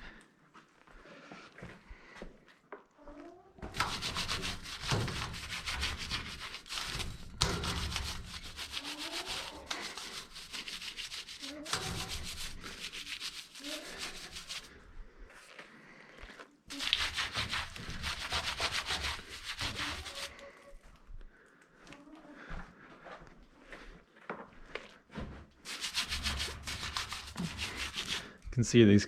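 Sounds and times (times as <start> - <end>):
rapid scrubbing strokes: 3.7 - 14.8, 16.7 - 20.4, 25.6 - 28.4.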